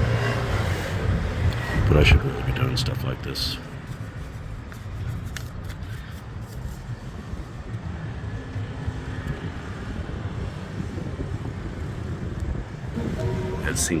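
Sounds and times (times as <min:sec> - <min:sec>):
road traffic rumble: 0:00.0 - 0:14.0.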